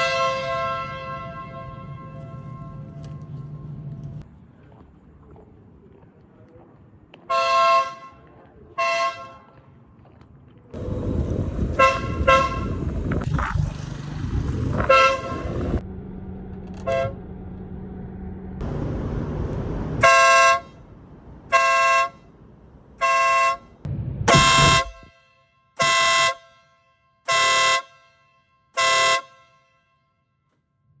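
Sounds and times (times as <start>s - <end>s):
electric air horn blasts: 0.0s - 4.2s, 10.8s - 13.8s, 14.4s - 15.8s, 16.8s - 17.2s, 20.0s - 20.8s, 24.3s - 29.9s
steady rumble: 1.1s - 4.3s, 10.8s - 21.6s, 23.7s - 25.1s.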